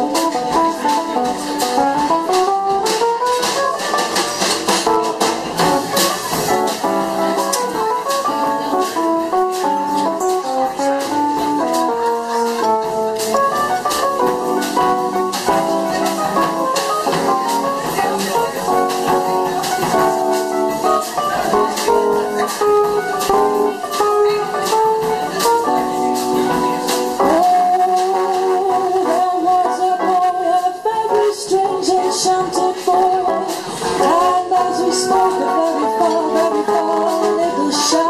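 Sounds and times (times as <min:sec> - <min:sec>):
drums ticking on cymbals: 0:00.0 - 0:29.7
keyboard chords: 0:00.0 - 0:38.0.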